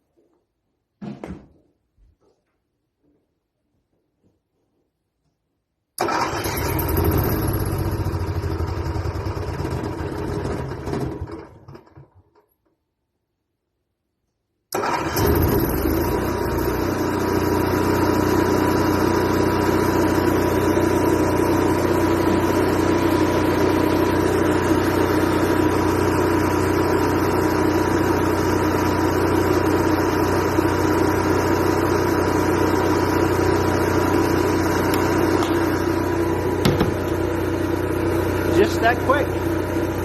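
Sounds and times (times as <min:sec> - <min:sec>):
generator engine running: 0:06.0 - 0:12.1, 0:14.8 - 0:40.0.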